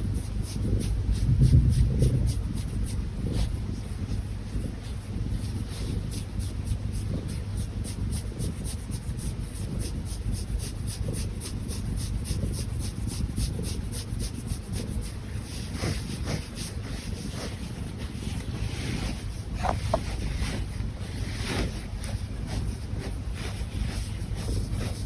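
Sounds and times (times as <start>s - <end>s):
fingers rubbing through fur: 0.0s - 25.0s.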